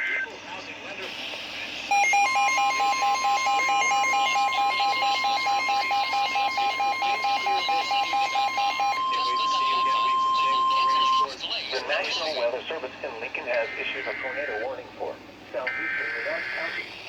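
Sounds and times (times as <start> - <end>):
single-pitch warning alarm tone: 1.9 - 11.3
rapid electronic alarm beeping: 1.9 - 11.8, 13.6 - 14.8, 15.7 - 17.0.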